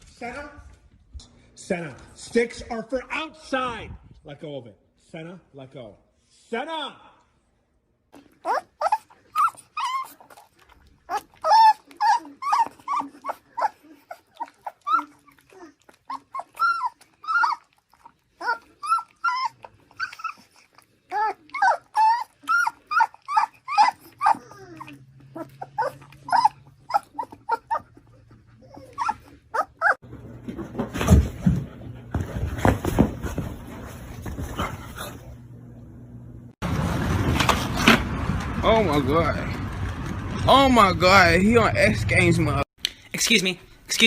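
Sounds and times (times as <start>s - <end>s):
dog yipping and whining: 8.2s - 30.0s.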